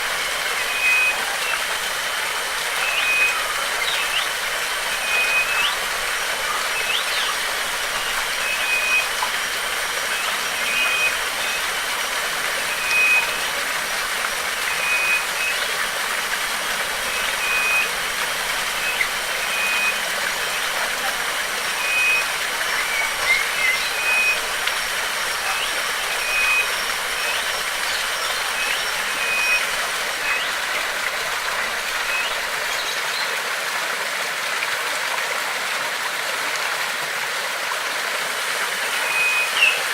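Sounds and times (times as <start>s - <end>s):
stream rushing: 0.0s - 39.9s
bird chirps: 2.7s - 9.4s, 10.0s - 13.6s, 14.6s - 15.9s, 16.7s - 33.0s, 39.0s - 39.9s.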